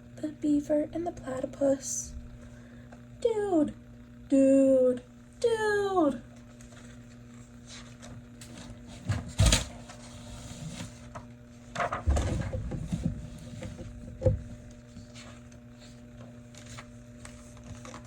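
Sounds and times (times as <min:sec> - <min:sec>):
steady low hum: 0:00.0 - 0:18.0
paper rustling: 0:15.0 - 0:18.0.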